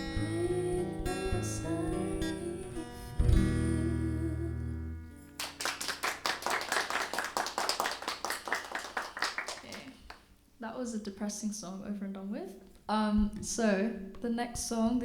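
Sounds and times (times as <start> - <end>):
person singing: 0.0 - 4.8
acoustic guitar strumming: 0.0 - 5.4
people clapping: 5.4 - 10.2.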